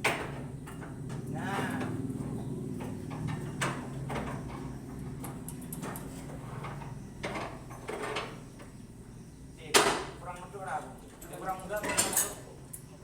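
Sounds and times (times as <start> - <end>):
metal knocks clinks and scrapes: 11.2 - 12.4.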